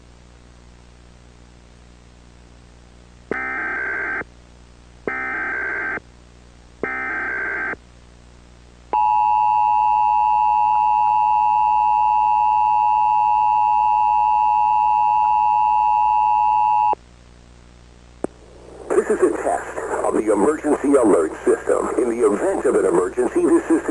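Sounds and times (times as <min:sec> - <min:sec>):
warbling data bursts: 0:18.3 - 0:23.9.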